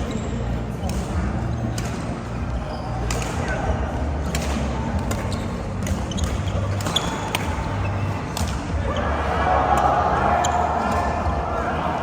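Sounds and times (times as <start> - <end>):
racket striking shuttlecock: 0.8 - 2.2, 4.2 - 7.6, 8.3 - 8.8.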